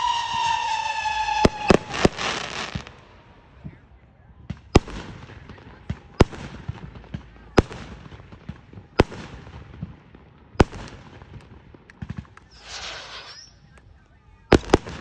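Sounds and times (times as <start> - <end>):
fireworks bangs: 0.0 - 15.0
small firework pops: 4.5 - 15.0.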